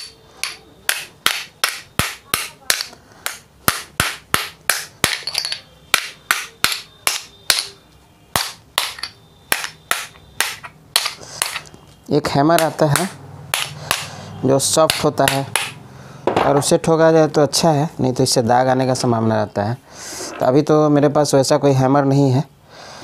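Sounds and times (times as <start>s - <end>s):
hammer striking metal: 0.0s - 7.8s, 8.4s - 11.7s, 12.6s - 14.1s, 14.8s - 16.7s.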